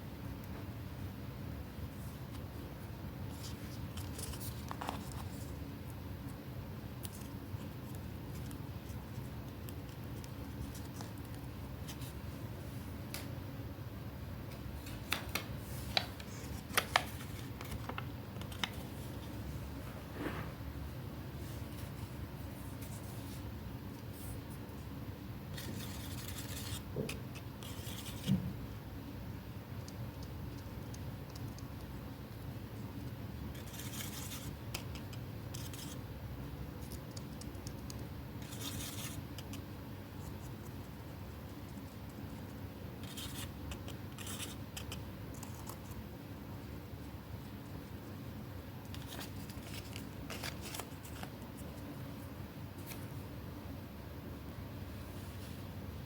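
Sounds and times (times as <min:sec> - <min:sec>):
steady low hum: 0:00.0 - 0:56.0
paper rustling and scratching: 0:03.3 - 0:05.6, 0:14.8 - 0:19.6, 0:25.5 - 0:28.4, 0:33.5 - 0:36.0, 0:36.8 - 0:39.6, 0:40.2 - 0:46.0, 0:48.8 - 0:51.9
clicks and taps of paper pieces: 0:14.5 - 0:18.8.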